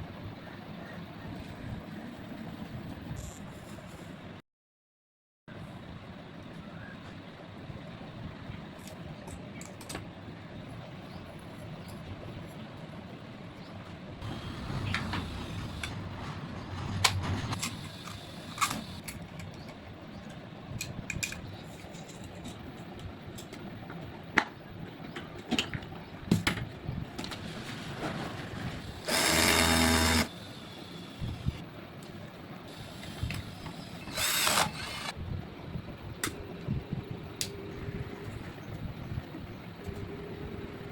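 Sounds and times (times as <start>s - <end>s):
loud pitched buzz: 28.9s - 31.6s.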